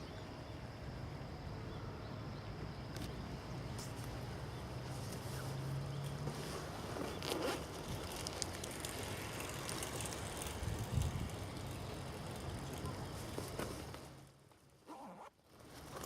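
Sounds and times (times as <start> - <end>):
small clicks and rustles: 4.8 - 16.0.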